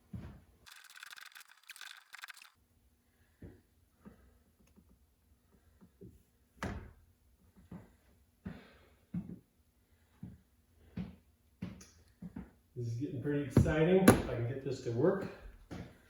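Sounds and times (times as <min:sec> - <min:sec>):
tools knocking and clunking: 0:13.6 - 0:14.4.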